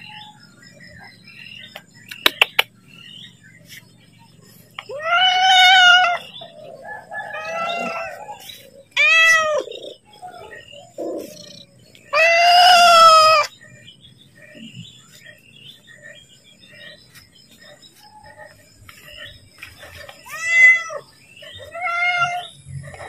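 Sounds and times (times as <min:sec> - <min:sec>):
cat meowing: 0:04.9 - 0:06.2, 0:09.0 - 0:09.7, 0:12.1 - 0:13.5, 0:20.3 - 0:21.0, 0:21.7 - 0:22.5.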